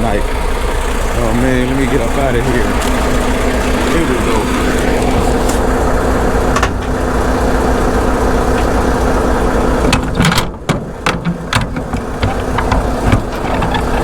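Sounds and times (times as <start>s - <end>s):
truck diesel engine idling: 0.0s - 14.0s
sharp clicks and knocks: 6.5s - 7.0s, 9.8s - 14.0s.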